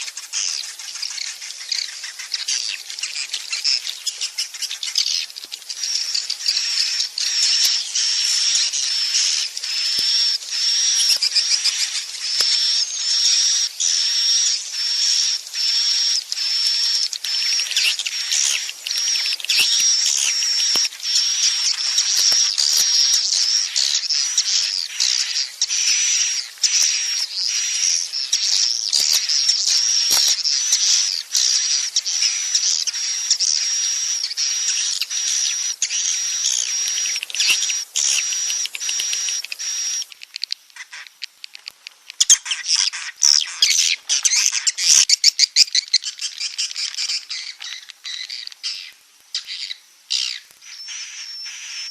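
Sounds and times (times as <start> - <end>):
swiftlets chirping: 5.6 - 33.8, 34.6 - 40.2.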